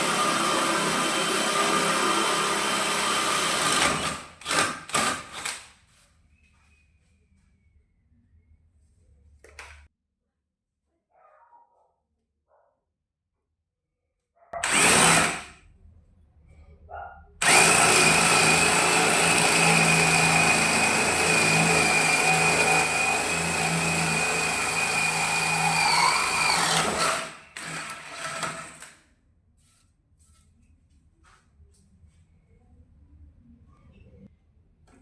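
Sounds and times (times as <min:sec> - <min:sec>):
cordless drill whining: 0:00.0 - 0:05.5, 0:14.6 - 0:15.5, 0:17.4 - 0:28.9.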